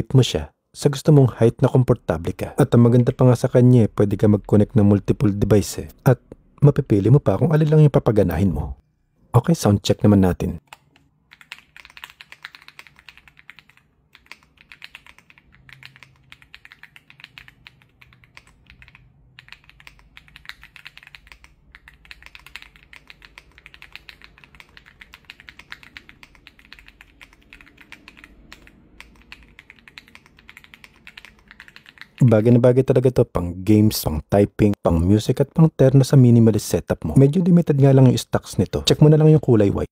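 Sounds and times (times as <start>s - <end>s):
mechanical keyboard typing: 10.6s - 32.6s.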